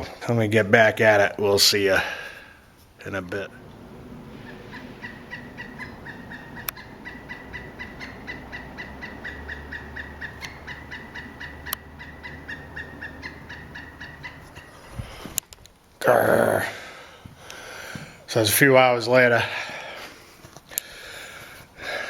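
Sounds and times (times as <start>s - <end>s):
car warning chime dinging: 3.5s - 14.4s.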